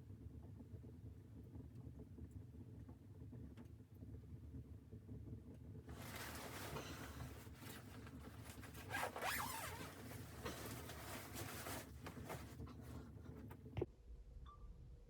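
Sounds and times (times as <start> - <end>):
fabric rustling: 5.9 - 13.5
zip being pulled: 7.6 - 12.5.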